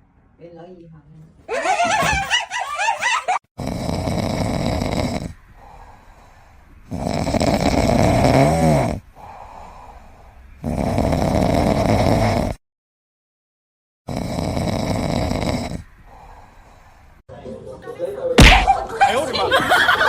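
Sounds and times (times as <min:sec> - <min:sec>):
loud snoring: 0:03.6 - 0:05.8, 0:06.9 - 0:09.8, 0:10.6 - 0:12.6, 0:14.1 - 0:16.2
quiet breaths: 0:03.8 - 0:08.2, 0:08.8 - 0:11.4, 0:14.2 - 0:17.3.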